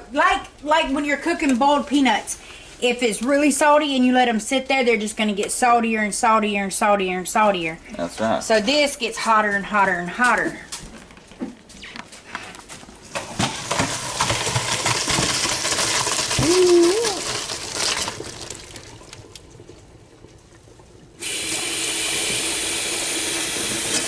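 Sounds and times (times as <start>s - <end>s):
water splashing into sink: 13.3s - 24.0s
stream of running water: 16.3s - 17.8s.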